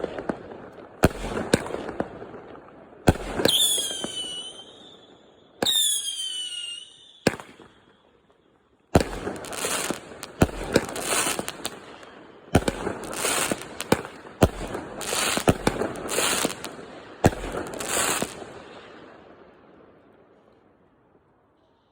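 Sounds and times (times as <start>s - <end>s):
whistling firework: 3.1s - 8.1s, 12.6s - 18.8s
firework crackling: 9.0s - 18.6s
firework bangs: 9.0s - 18.8s.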